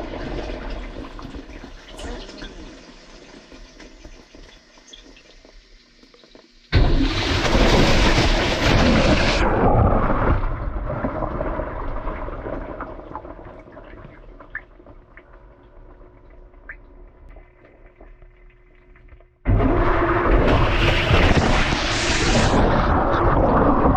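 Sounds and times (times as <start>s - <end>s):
water splashing in washing machine: 0.0s - 15.6s, 16.2s - 23.9s.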